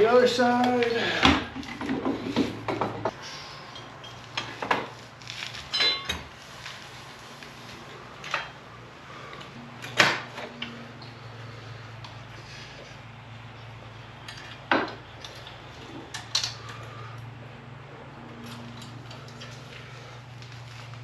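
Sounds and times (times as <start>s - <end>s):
steady low hum: 0.0s - 21.0s
metal brackets and tools clinking: 5.7s - 6.3s.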